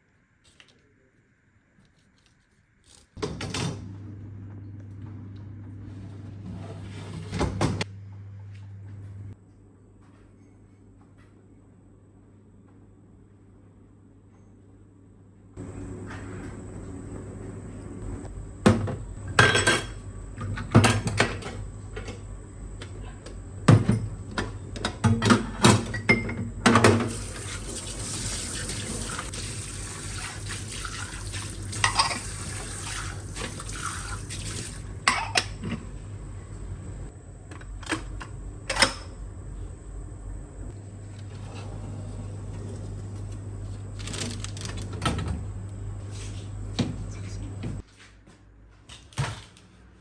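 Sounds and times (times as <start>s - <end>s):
dishes clinking in sink: 18.8s - 21.5s, 23.7s - 27.2s, 30.8s - 34.2s, 35.0s - 35.8s.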